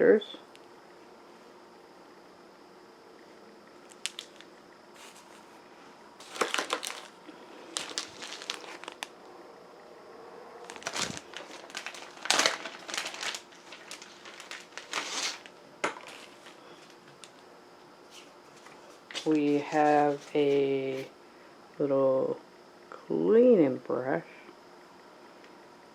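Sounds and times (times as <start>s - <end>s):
packaging crinkling and rustling: 3.8s - 5.5s, 6.2s - 9.2s, 10.6s - 17.4s.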